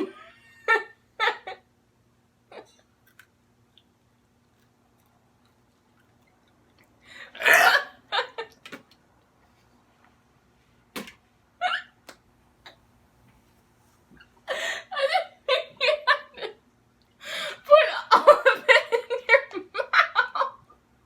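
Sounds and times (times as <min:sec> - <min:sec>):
man gagging and retching: 0:07.4 - 0:08.0.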